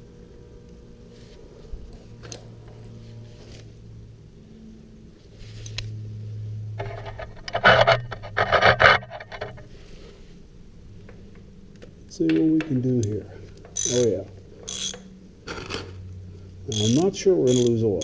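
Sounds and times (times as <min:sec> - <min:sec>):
socket wrench clicking and clattering: 0:12.3 - 0:15.1, 0:16.7 - 0:17.8.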